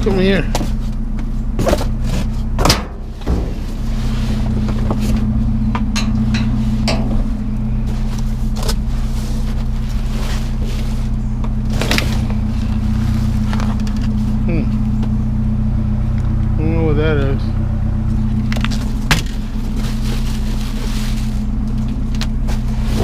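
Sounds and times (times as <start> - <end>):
vehicle engine idling: 0.0 - 23.0
junk clattering: 0.5 - 15.2.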